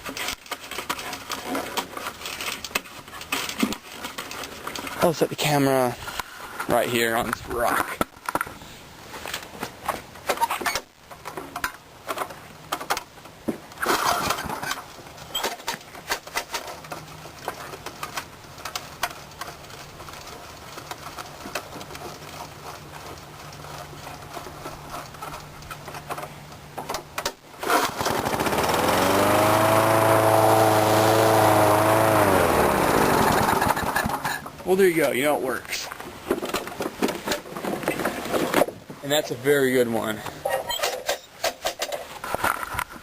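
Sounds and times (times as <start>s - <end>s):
lawn mower engine starting: 13.8s - 25.4s, 27.1s - 34.8s.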